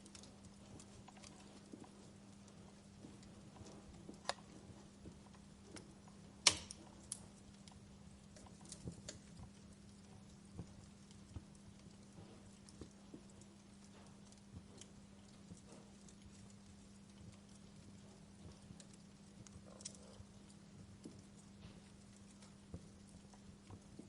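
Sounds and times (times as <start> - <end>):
campfire crackling: 0.0 - 24.0.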